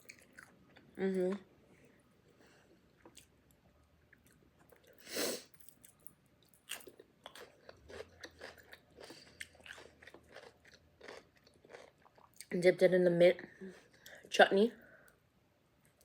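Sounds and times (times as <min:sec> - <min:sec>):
crunchy chewing: 0:05.6 - 0:12.5.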